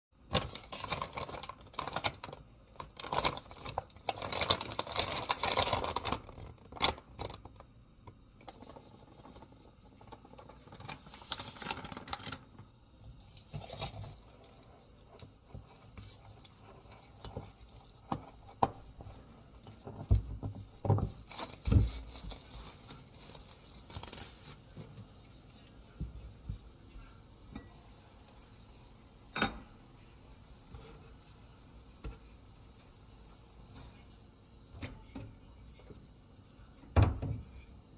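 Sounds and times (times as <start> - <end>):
packaging rustling and tearing: 0.3 - 7.6, 10.0 - 12.5, 21.0 - 24.9.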